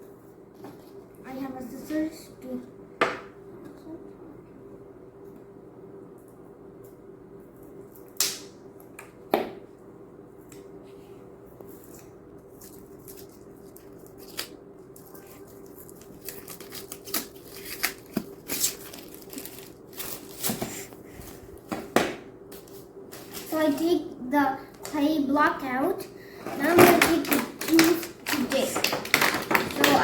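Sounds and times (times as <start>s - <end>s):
faint steady hum: 0.0s - 30.0s
packaging crinkling and snapping: 12.6s - 20.7s, 26.6s - 30.0s
scissors snipping packaging: 12.6s - 20.7s, 26.7s - 30.0s.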